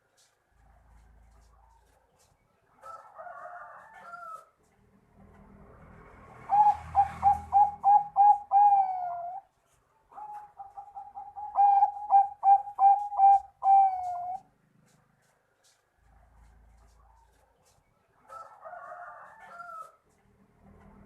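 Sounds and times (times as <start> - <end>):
dove cooing: 6.4 - 9.5, 10.1 - 15.0.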